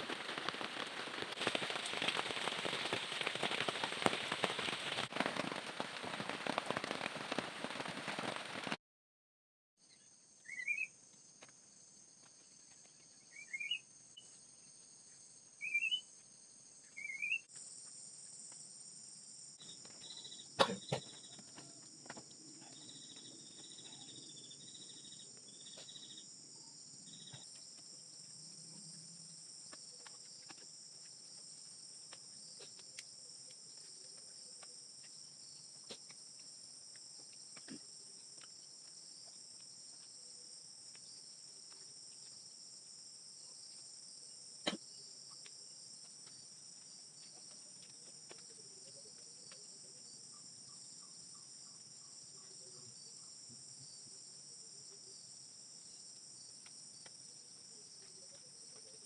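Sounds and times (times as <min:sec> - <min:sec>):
crickets and insects chirping: 0:00.0 - 0:08.7, 0:09.8 - 0:59.0.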